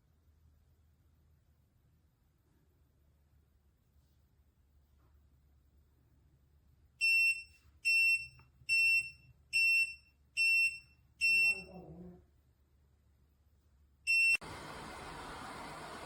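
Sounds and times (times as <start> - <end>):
electronic alarm beeps: 7.0 - 11.7, 14.1 - 14.4.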